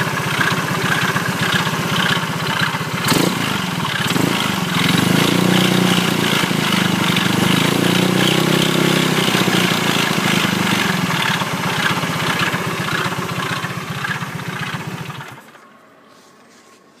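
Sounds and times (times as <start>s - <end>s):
engine running and stalling: 0.0s - 15.7s.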